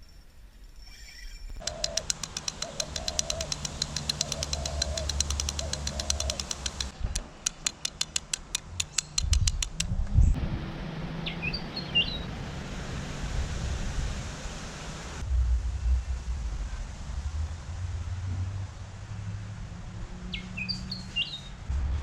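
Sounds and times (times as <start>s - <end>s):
dove cooing: 1.6s - 6.9s
rapid even clicking: 1.6s - 10.0s.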